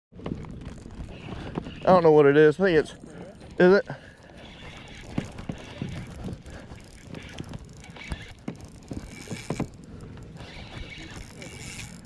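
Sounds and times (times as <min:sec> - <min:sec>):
fishing reel clicking: 0:02.6 - 0:12.0.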